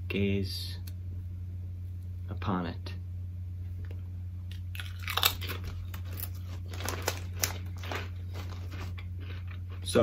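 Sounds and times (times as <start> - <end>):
low electrical hum: 0.0 - 10.0
chip bag crinkling: 4.5 - 10.0.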